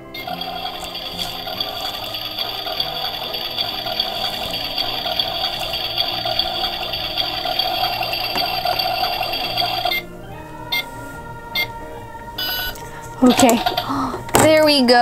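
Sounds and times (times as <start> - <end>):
constant electronic tone: 0.0 - 14.2
crackling noise from toy speaker: 0.2 - 10.0, 12.4 - 14.0.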